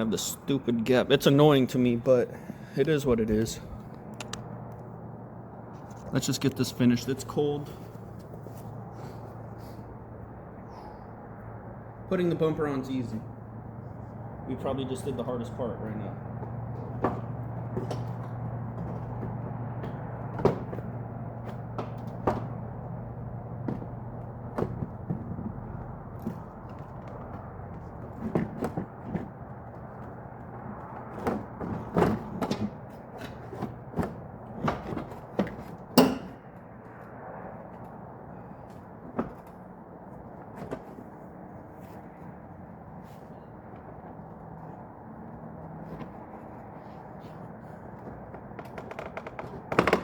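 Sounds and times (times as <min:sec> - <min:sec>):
plastic bumper knocks and clicks: 0:48.4 - 0:50.0.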